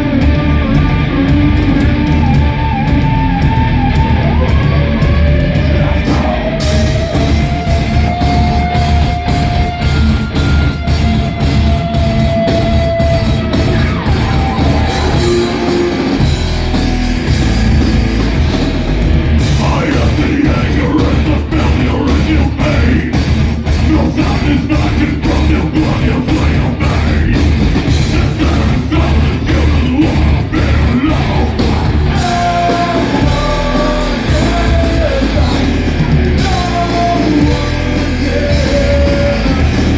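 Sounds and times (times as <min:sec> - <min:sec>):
bass guitar: 0:00.0 - 0:39.9
distorted electric guitars: 0:00.0 - 0:39.9
drum kit: 0:00.0 - 0:39.9.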